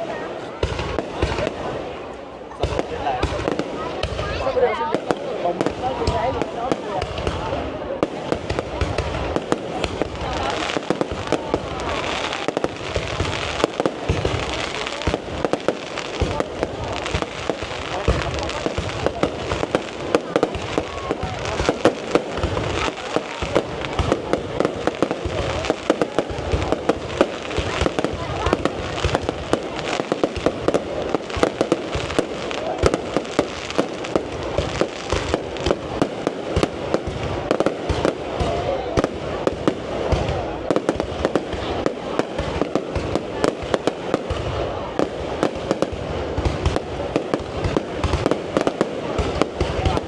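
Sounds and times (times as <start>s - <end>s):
firework bangs and crackles: 0.0s - 50.0s
low booms of bursting shells: 2.6s - 50.0s.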